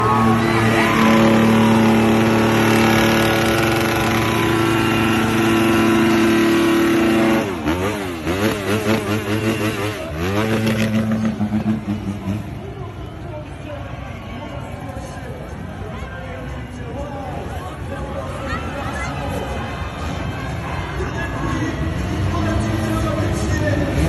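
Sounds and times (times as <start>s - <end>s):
motorcycle engine revving: 0.0s - 12.9s.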